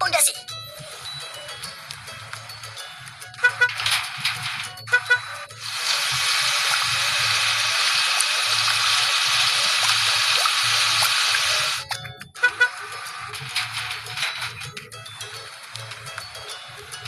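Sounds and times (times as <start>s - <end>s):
rushing hiss: 5.6s - 11.8s.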